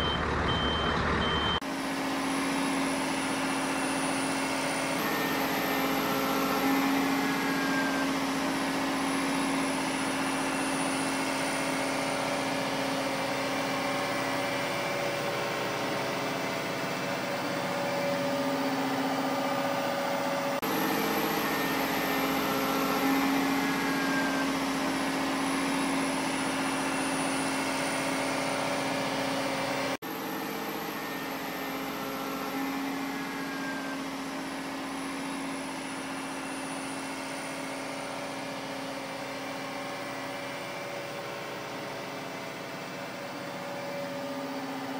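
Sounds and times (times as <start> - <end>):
heavy vehicle engine idling: 0.0 - 20.6.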